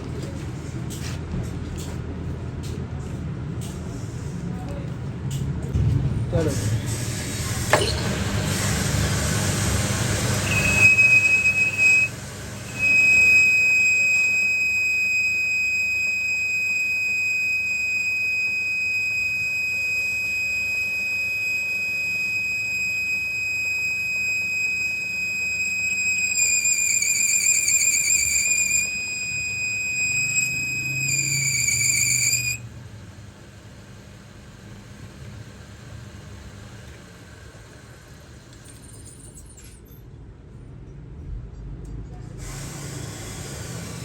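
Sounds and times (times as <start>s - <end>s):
rough machining noise: 6.4s - 18.0s, 21.3s - 32.6s
high-pitched mechanical squeal: 9.6s - 32.6s.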